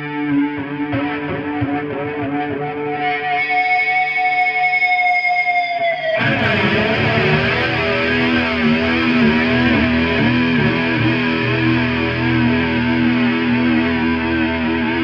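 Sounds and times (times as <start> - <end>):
distorted electric guitar: 0.0 - 15.0.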